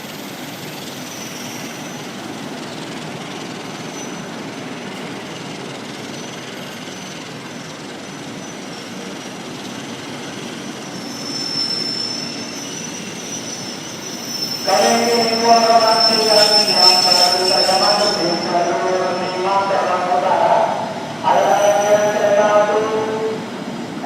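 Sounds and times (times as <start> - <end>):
high wheel squeal: 0.0 - 2.2, 3.4 - 4.4, 5.8 - 20.1
train rumbling on rails: 0.0 - 24.0.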